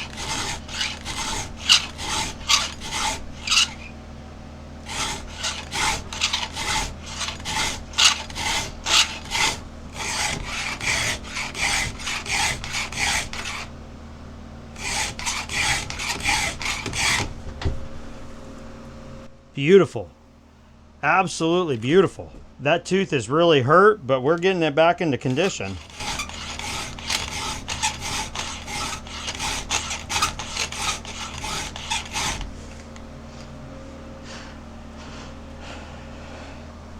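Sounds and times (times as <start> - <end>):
file rasping on chainsaw chain: 0.0 - 4.0, 4.8 - 13.7, 14.8 - 17.3, 25.2 - 33.1.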